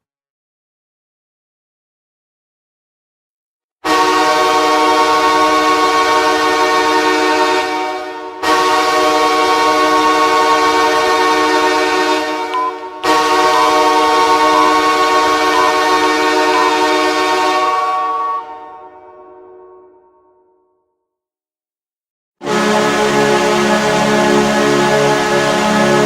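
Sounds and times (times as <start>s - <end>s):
air horn chord blasts: 3.9s - 20.3s, 22.4s - 26.0s.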